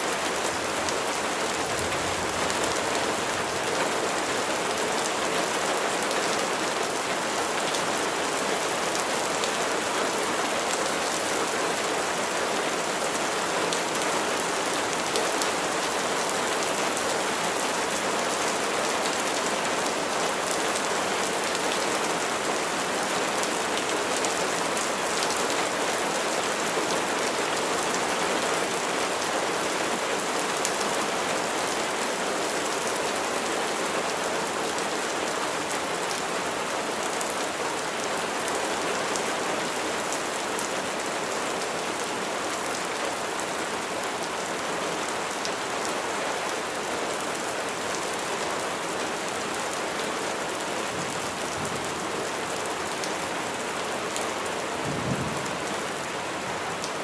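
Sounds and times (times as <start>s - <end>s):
steady rain falling: 0.0s - 57.0s.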